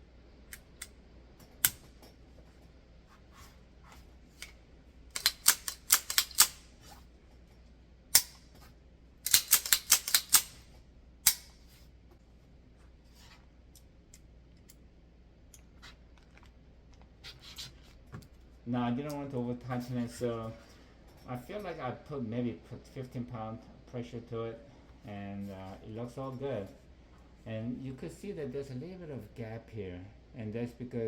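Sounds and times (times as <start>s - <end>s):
metallic clicks of pistol parts: 0.5s - 2.2s, 5.1s - 6.7s, 8.1s - 8.5s, 9.2s - 11.6s.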